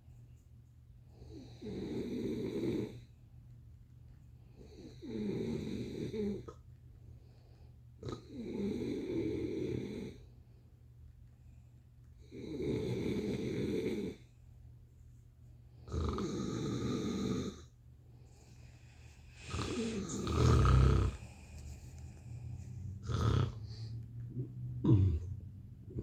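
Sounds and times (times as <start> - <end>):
steady low hum: 17.5 - 26.0
person snoring: 19.4 - 21.7, 22.4 - 26.0.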